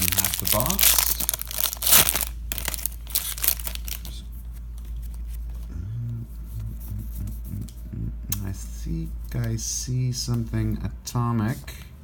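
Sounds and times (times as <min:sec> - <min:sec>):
plastic wrapper crinkling: 0:00.0 - 0:05.6.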